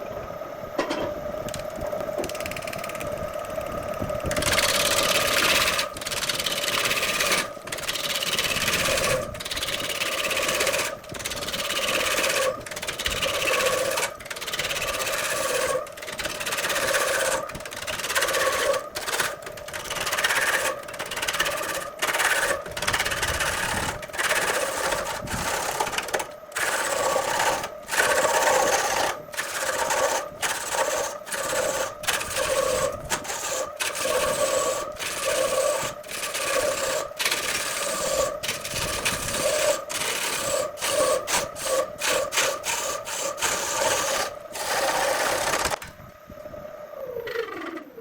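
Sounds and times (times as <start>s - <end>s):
motor hum: 0.0s - 48.0s
motor winding down: 1.4s - 46.0s
power tool grinding wood: 4.3s - 45.8s.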